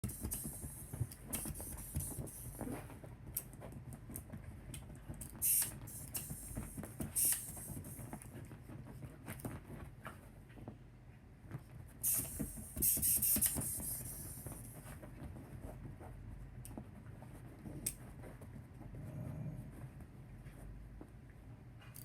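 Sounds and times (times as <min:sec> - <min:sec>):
puppy tapping and scratching: 0:00.0 - 0:10.8, 0:11.4 - 0:21.2
short hissing bursts: 0:05.4 - 0:07.9, 0:12.0 - 0:14.5.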